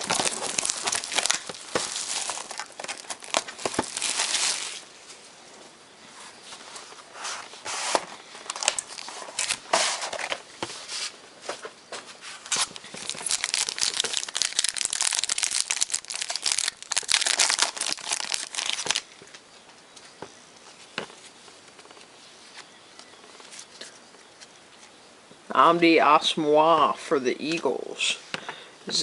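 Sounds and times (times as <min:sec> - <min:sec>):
plastic wrapping tearing and crinkling: 0:00.0 - 0:04.9, 0:08.4 - 0:10.4, 0:12.5 - 0:19.1.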